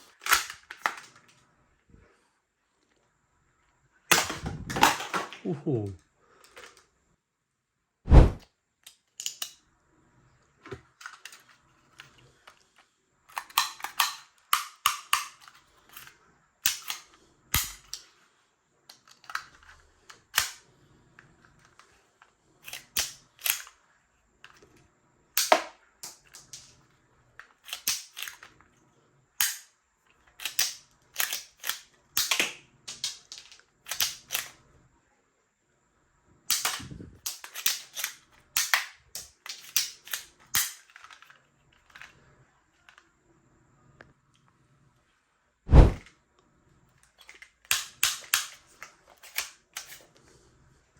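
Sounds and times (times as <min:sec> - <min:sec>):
toy guns cocked and fired: 0:00.0 - 0:01.2, 0:04.1 - 0:05.5, 0:08.9 - 0:09.6, 0:13.3 - 0:18.0, 0:20.2 - 0:20.6, 0:22.6 - 0:23.8, 0:25.4 - 0:26.7, 0:27.6 - 0:28.5, 0:29.4 - 0:34.6, 0:36.5 - 0:41.3, 0:47.2 - 0:50.0.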